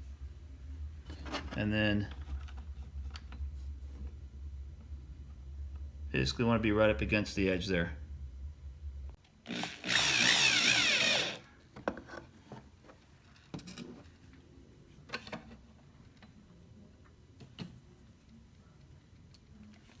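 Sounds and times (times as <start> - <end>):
cordless drill driving screw: 9.5 - 11.5.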